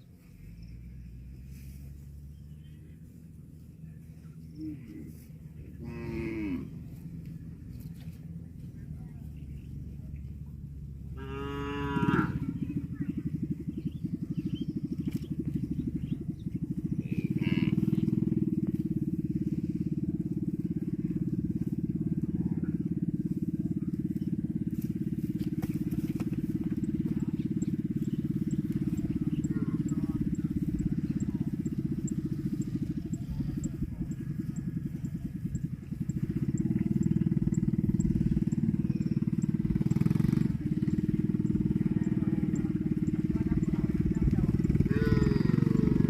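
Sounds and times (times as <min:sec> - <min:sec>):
loud steady low rumble: 0:00.0 - 0:46.0
cow mooing: 0:05.8 - 0:07.0, 0:11.1 - 0:12.7, 0:17.0 - 0:18.1, 0:44.8 - 0:46.0.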